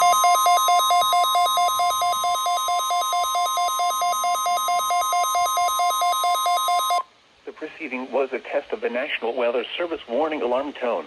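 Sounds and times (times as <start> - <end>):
rapid pulsing beeps: 0.0 - 7.0
steady high alarm tone: 0.0 - 7.0.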